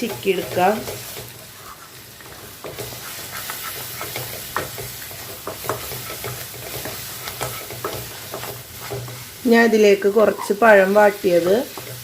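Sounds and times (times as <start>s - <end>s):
utensil scraping and tapping pan: 0.0s - 9.2s
eggs sizzling in hot oil: 0.0s - 12.0s.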